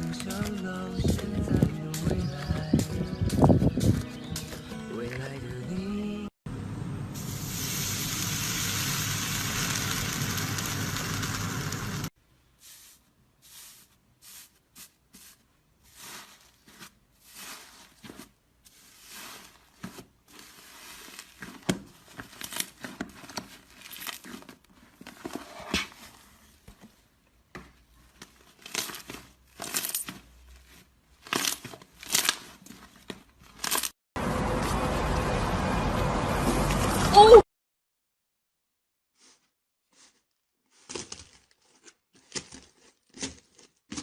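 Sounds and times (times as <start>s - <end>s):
steady hiss: 7.2s - 12.1s
slime squished and torn: 28.3s - 33.9s, 40.8s - 44.0s.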